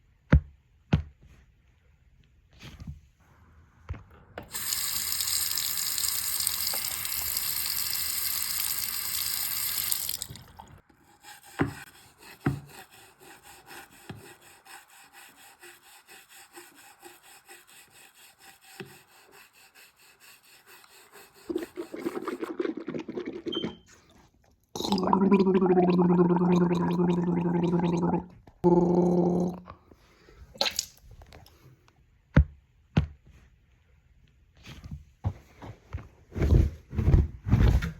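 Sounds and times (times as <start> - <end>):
tap water running into sink: 4.5 - 10.7
water drips: 4.5 - 10.8, 30.6 - 31.0.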